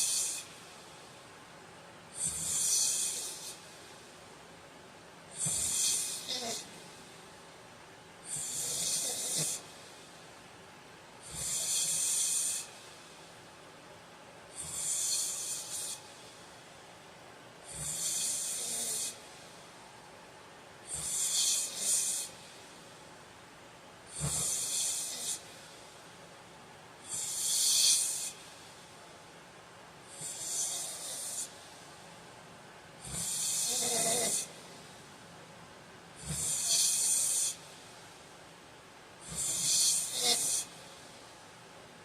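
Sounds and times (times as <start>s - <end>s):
man snoring: 0.0s - 0.5s, 2.2s - 3.6s, 5.3s - 6.8s, 8.3s - 9.7s, 11.2s - 12.7s, 14.6s - 16.0s, 17.7s - 19.2s, 20.9s - 22.4s, 24.1s - 25.5s, 27.1s - 28.4s, 30.1s - 31.5s, 33.0s - 34.6s, 36.2s - 37.6s, 39.2s - 40.7s.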